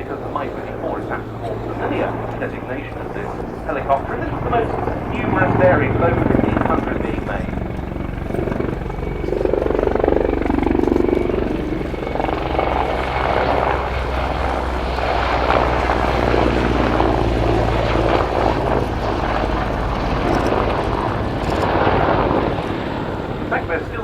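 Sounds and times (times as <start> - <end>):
helicopter loud low drone: 0.0 - 24.0.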